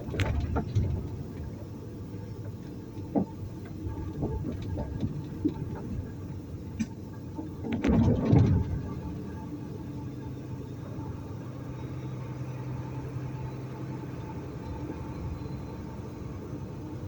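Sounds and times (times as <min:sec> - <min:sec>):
knocks and rattles: 0:00.0 - 0:06.9
truck engine rumbling: 0:00.0 - 0:17.0.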